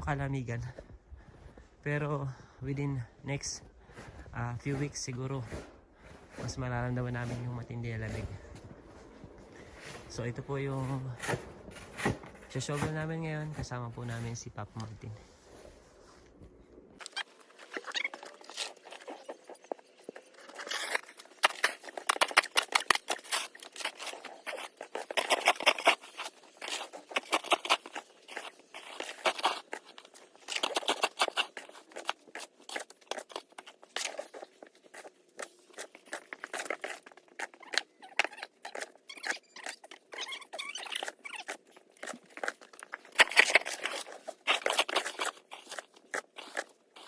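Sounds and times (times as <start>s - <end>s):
snow shovel scraping snow: 3.4s - 16.2s.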